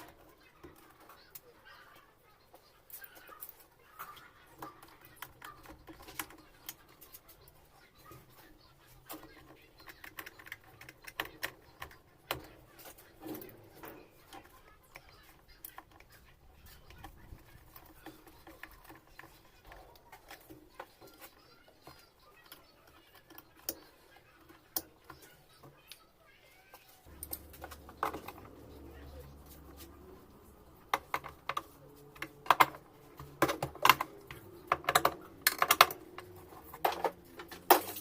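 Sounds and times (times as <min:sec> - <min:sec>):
small parts and tools clicking: 0:00.0 - 0:38.0.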